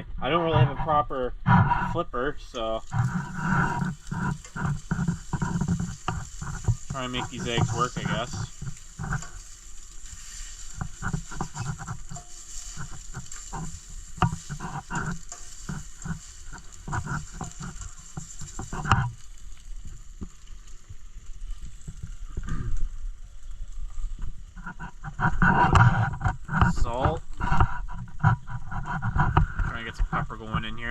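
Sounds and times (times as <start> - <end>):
utensil scraping and tapping pan: 1.5 - 20.5, 24.2 - 30.9
eggs sizzling in a pan: 1.7 - 30.9.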